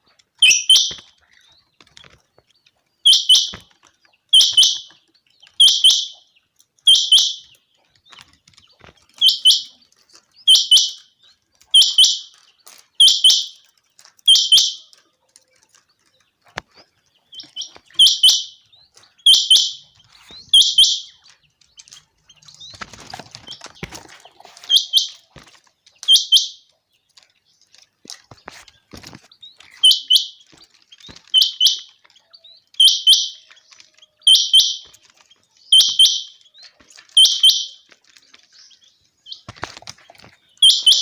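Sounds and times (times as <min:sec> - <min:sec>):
quail calling: 0:00.0 - 0:01.5, 0:03.0 - 0:03.7, 0:04.3 - 0:05.0, 0:05.6 - 0:06.2, 0:06.8 - 0:07.6, 0:11.7 - 0:12.4, 0:13.0 - 0:13.6, 0:17.4 - 0:18.6, 0:19.2 - 0:21.3, 0:22.4 - 0:25.4, 0:29.7 - 0:32.0, 0:32.8 - 0:36.4, 0:37.1 - 0:37.9, 0:40.6 - 0:41.0.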